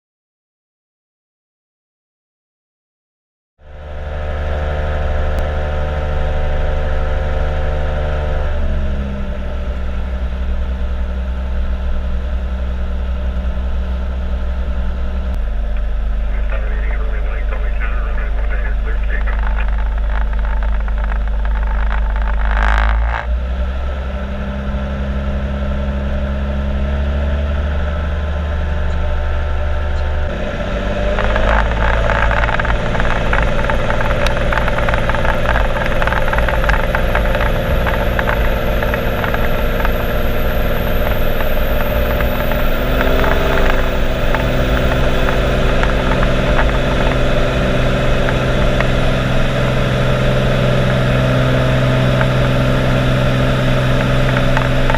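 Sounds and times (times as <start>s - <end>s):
piston aircraft engine running: 3.6s - 54.9s
faint high whine: 10.0s - 23.1s.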